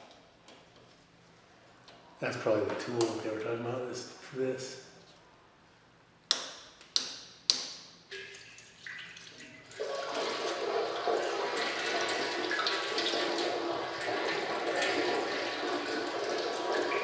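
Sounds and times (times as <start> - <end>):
coolant gushing into a bucket: 8.2 - 17.0.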